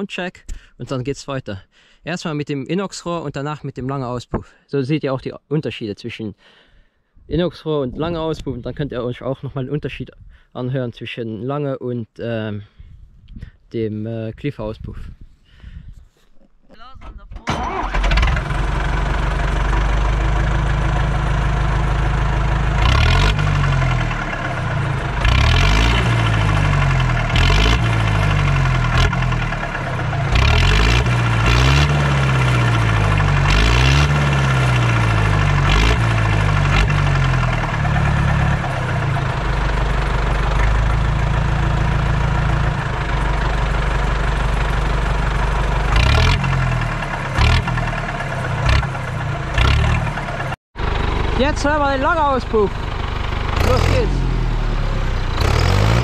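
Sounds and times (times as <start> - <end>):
tractor diesel engine revving: 17.4 - 56.0.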